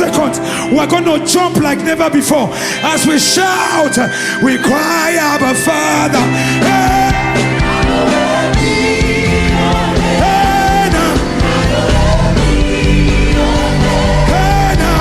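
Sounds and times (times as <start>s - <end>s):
live band playing praise music: 0.0s - 15.0s
voices singing held notes: 5.6s - 15.0s.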